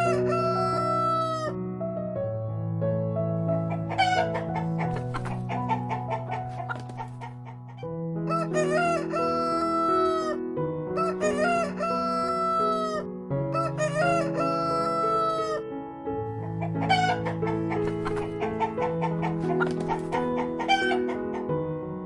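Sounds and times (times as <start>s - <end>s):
rooster crowing: 0.0s - 1.5s, 3.8s - 7.1s, 8.3s - 10.4s, 11.0s - 15.6s, 16.6s - 21.2s.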